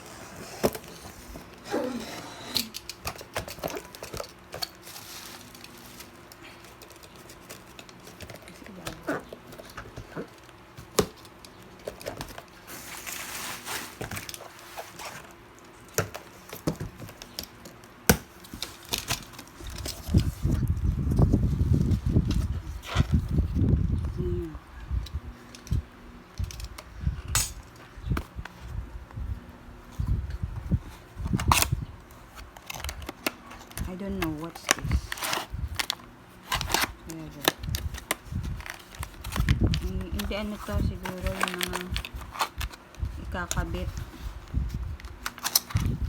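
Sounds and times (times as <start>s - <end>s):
packaging crinkling: 0.4s - 20.6s, 31.1s - 46.0s.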